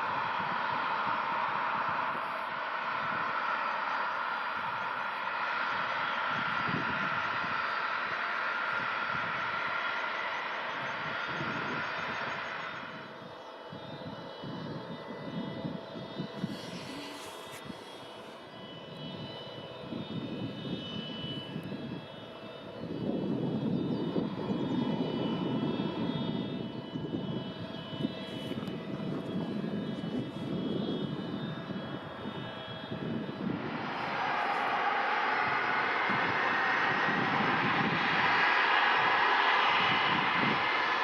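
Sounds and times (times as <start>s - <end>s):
jet engines whining: 0.0s - 41.0s
rough fluctuating rumble: 16.4s - 18.7s, 31.9s - 41.0s.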